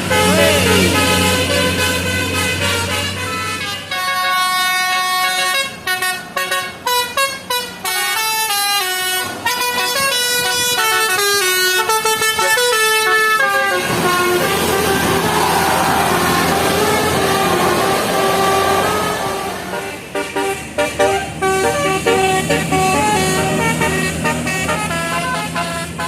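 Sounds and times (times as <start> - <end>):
bus multi-tone horn tune: 0.0 - 26.0
loud rushing noise: 13.7 - 24.4.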